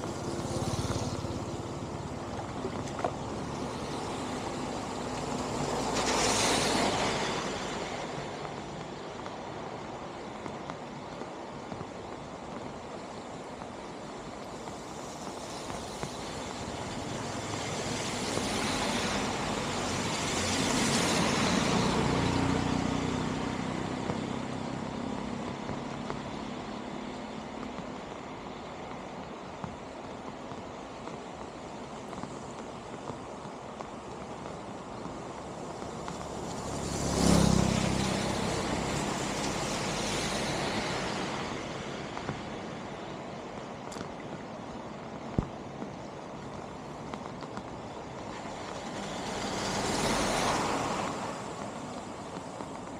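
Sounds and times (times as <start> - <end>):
road vehicle passing by: 17.2 - 25.5, 36.0 - 42.5, 48.3 - 52.9
motor vehicle passing by: 36.4 - 41.4, 48.6 - 51.6.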